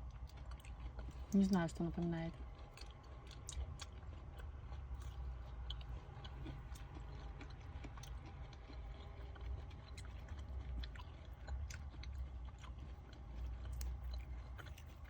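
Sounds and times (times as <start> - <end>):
person chewing soft fruit: 0.0 - 15.0.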